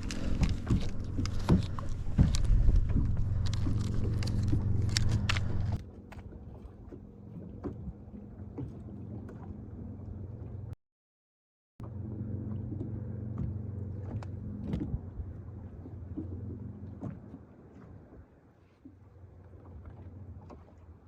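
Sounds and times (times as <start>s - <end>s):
handling knocks and clicks: 0.0s - 5.8s
low steady hum: 0.0s - 10.8s, 11.8s - 21.0s.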